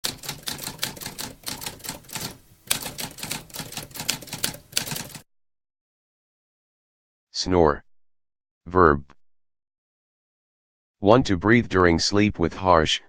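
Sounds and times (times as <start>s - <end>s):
typewriter keys typing: 0.0s - 5.2s.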